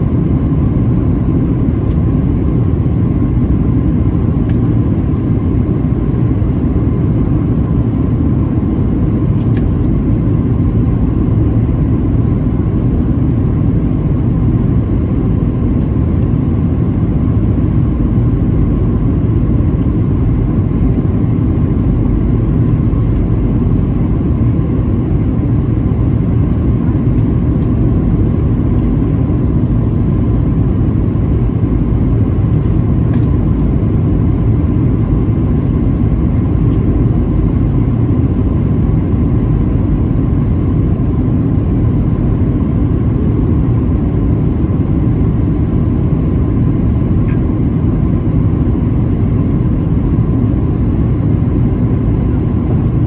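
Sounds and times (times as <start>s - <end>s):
airplane cabin engine rumble: 0.0s - 53.0s
faint steady whine: 0.0s - 53.0s.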